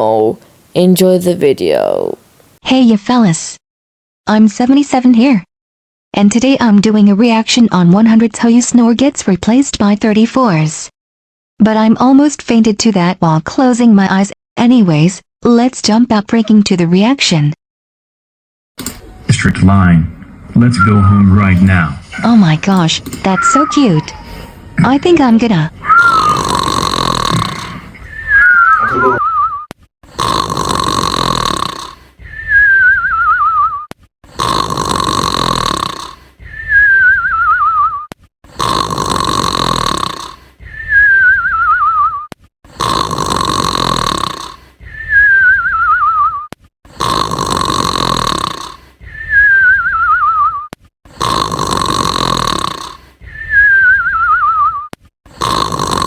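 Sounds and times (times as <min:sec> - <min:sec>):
rasping snore: 0:26.0 - 0:28.0, 0:30.1 - 0:32.5, 0:34.3 - 0:36.8, 0:38.5 - 0:41.0, 0:42.7 - 0:45.2, 0:46.9 - 0:49.4, 0:51.1 - 0:53.6, 0:55.3 - 0:56.0.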